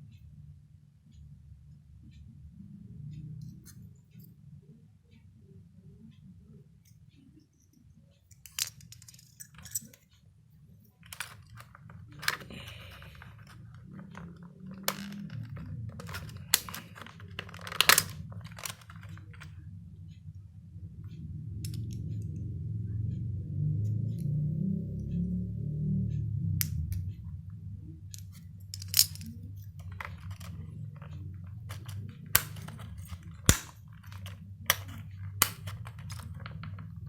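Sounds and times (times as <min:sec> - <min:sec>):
plastic keyboard parts clicking: 0:11.0 - 0:19.5, 0:28.2 - 0:37.0
low hum: 0:11.0 - 0:37.0.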